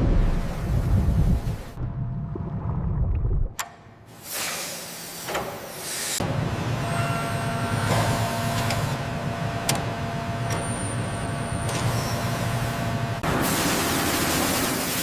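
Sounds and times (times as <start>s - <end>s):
low rumble: 0.0s - 3.6s
machine rumble with hum: 0.0s - 3.9s.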